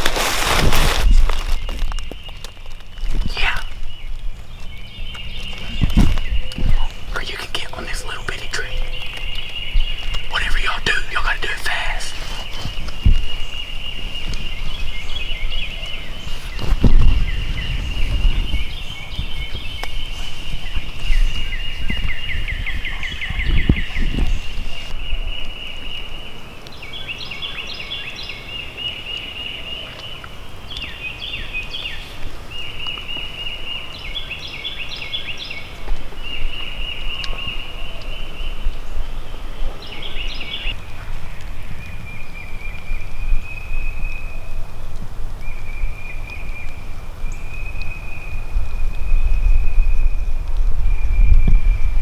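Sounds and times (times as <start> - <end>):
low microphone rumble: 8.7 - 25.4.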